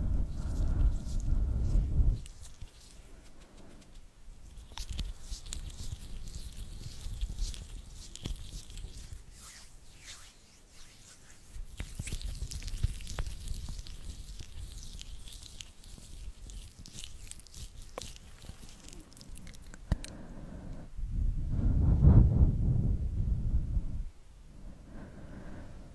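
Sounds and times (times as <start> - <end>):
wet mouth clicks and smacks: 0.1 - 10.2, 11.6 - 20.2.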